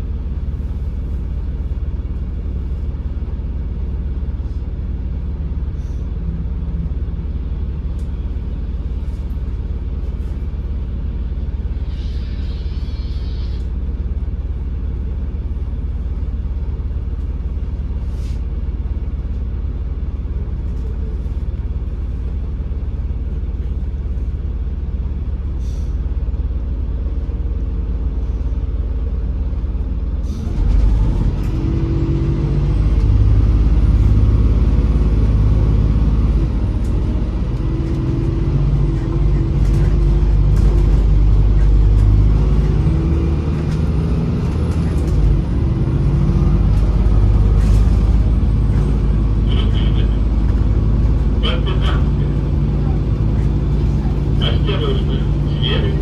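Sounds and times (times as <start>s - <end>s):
bus engine drone: 0.0s - 56.0s
bus accelerating through gears: 30.2s - 56.0s.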